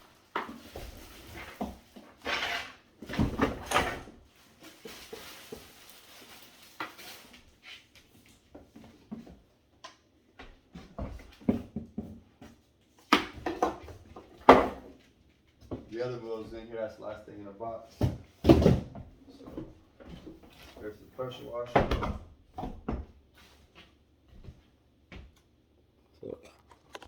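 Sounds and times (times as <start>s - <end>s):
plastic parts clattering: 26.4s - 27.0s.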